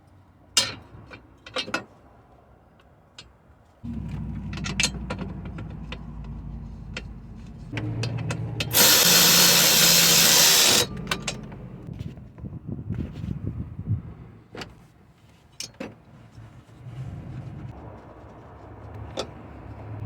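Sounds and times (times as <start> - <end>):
cordless power tool motor hum: 8.7 - 11.8.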